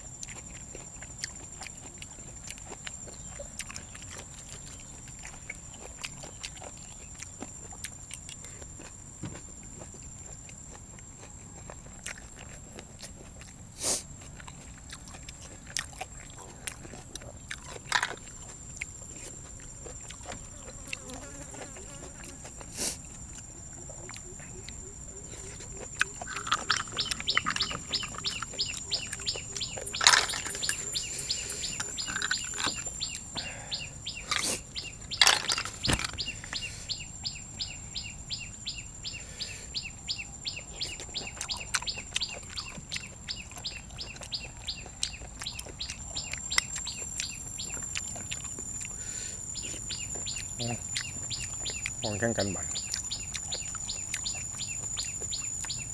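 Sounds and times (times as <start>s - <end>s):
crunchy chewing: 0.0s - 55.9s
high insect drone: 17.8s - 44.8s, 45.4s - 55.9s.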